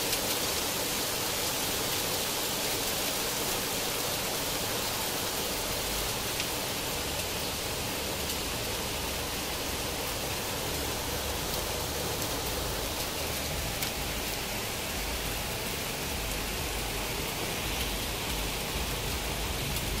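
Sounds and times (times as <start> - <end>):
heavy rain hissing: 0.0 - 20.0
hail impacts ticking: 5.8 - 20.0.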